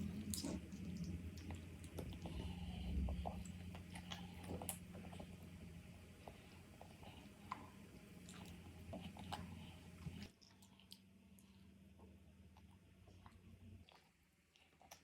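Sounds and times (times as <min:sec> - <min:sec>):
chewing and mouth clicks: 0:00.0 - 0:15.0
low steady hum: 0:00.0 - 0:15.0.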